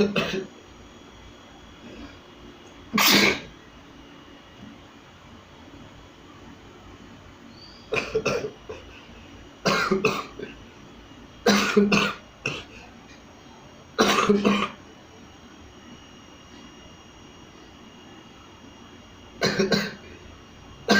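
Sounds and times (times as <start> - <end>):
person sneezing: 3.0 - 3.5.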